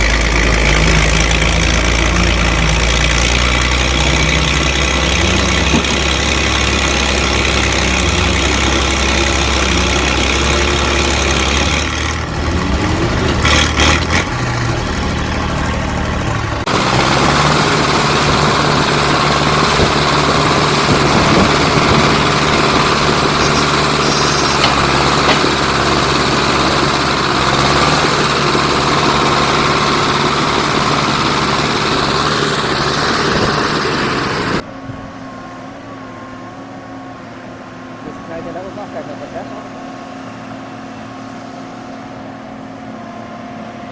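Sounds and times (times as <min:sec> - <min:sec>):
heavy machinery engine running: 0:00.0 - 0:34.6
thin high whine: 0:16.7 - 0:34.6.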